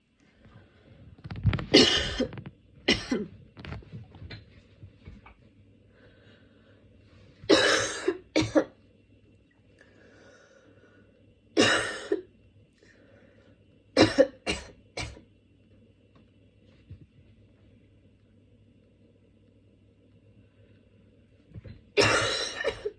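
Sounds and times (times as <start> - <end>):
woman coughing: 1.8 - 2.3, 2.9 - 3.3, 7.5 - 8.7, 11.6 - 12.3, 14.0 - 15.2, 22.0 - 22.9.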